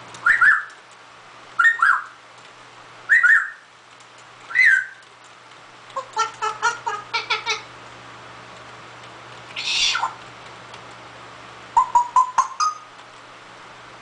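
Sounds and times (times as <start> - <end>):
parrot harsh hissing call: 9.6 - 10.2
parrot short pitched calls: 9.6 - 10.2.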